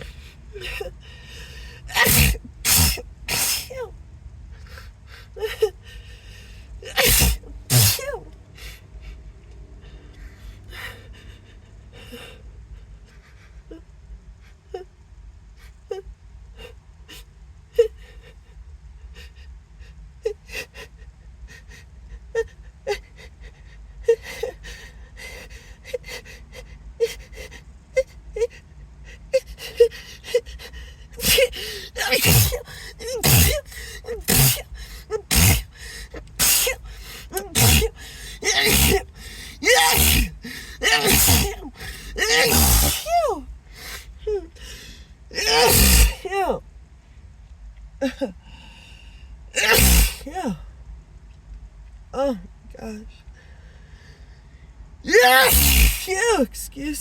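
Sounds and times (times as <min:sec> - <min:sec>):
person gasping before sneeze: 0:01.9 - 0:03.9, 0:06.9 - 0:08.2, 0:31.2 - 0:46.6, 0:49.6 - 0:50.6, 0:55.1 - 0:56.2.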